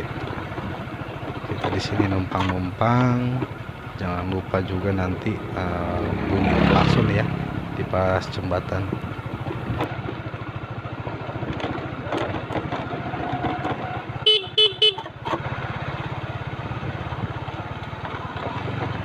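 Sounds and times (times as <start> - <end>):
motorcycle engine running: 0.0 - 9.9
motorcycle horn beeps: 14.3 - 15.0.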